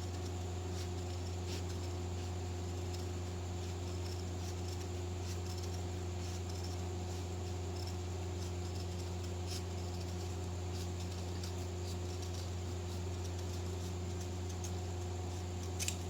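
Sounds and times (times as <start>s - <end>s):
steady low hum: 0.0s - 16.0s
scissors snipping fabric: 15.7s - 16.0s.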